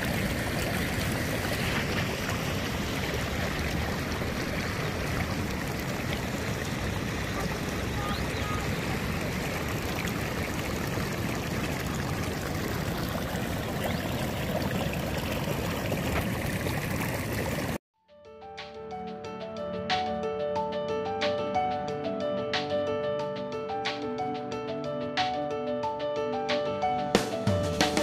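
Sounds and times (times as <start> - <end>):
stream water rushing: 0.0 - 17.8.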